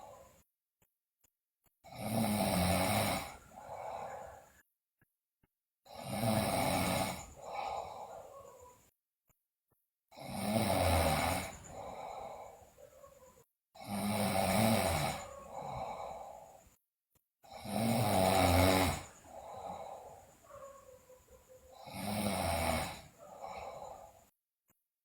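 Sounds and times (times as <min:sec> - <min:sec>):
girl snoring: 0:00.0 - 0:00.4, 0:01.8 - 0:04.6, 0:05.9 - 0:08.9, 0:10.1 - 0:16.6, 0:17.4 - 0:24.3
soft breath: 0:00.0 - 0:00.4, 0:03.3 - 0:04.6, 0:07.2 - 0:08.9, 0:11.5 - 0:13.4, 0:15.2 - 0:16.8, 0:19.0 - 0:21.7, 0:23.1 - 0:24.3.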